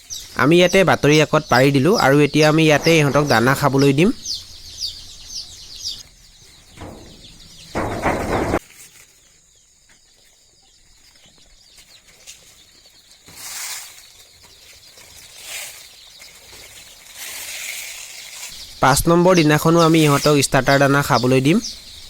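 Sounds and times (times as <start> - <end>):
chicks peeping faintly: 0.0 - 22.0.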